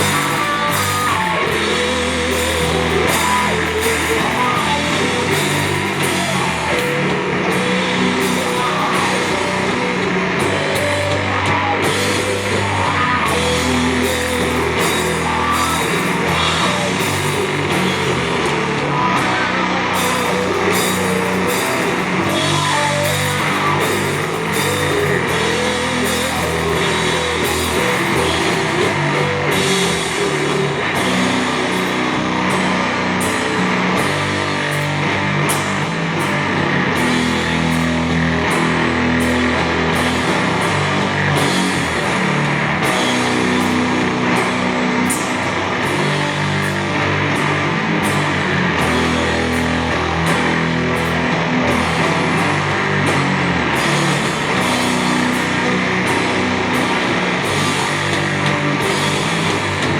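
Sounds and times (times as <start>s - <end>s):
distorted guitars and bass: 0.0s - 59.9s
drums: 0.0s - 59.9s.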